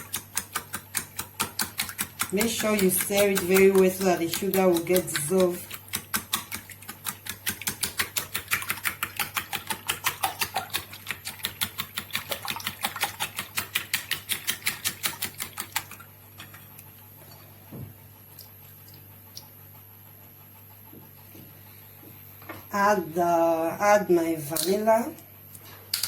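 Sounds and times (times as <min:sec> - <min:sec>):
whisk clicking against bowl: 0:00.0 - 0:16.0.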